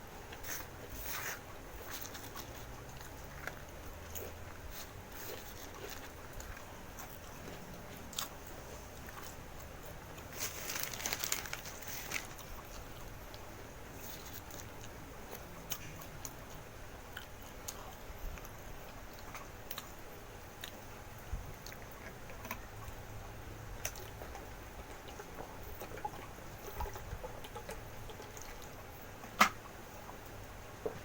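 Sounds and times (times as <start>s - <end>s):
person chewing: 0.3s - 20.0s.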